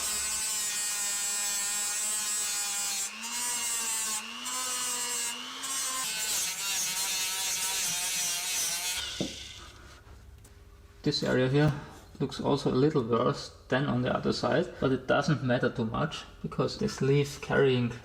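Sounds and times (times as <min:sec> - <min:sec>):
grinder whining on metal: 0:00.0 - 0:09.7.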